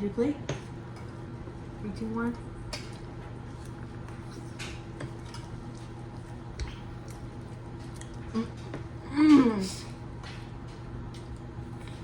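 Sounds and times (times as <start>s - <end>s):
steady low hum: 0.0s - 12.0s
wet chewing squishes: 2.6s - 9.0s.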